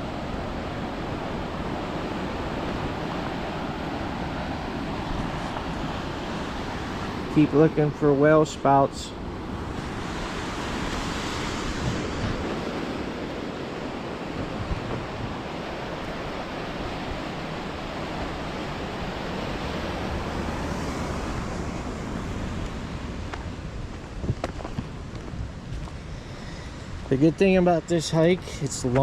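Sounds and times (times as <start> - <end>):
surf washing on rocks: 0.0 - 29.0
wind buffeting microphone: 9.2 - 29.0.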